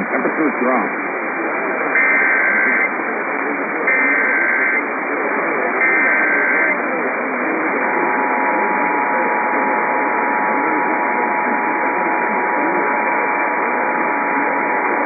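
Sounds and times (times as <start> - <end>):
radio static: 0.0 - 15.0
warbling data tones: 0.0 - 15.0
two-tone attention signal: 2.0 - 2.9, 3.9 - 4.8, 5.8 - 6.8.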